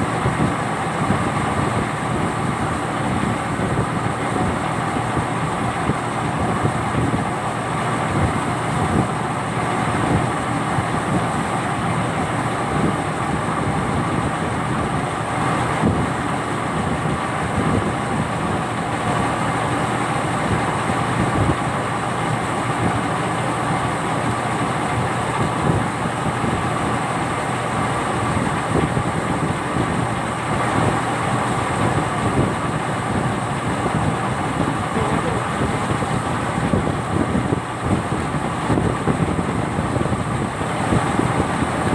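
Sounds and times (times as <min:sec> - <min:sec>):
boat engine running steadily: 0:00.0 - 0:41.9.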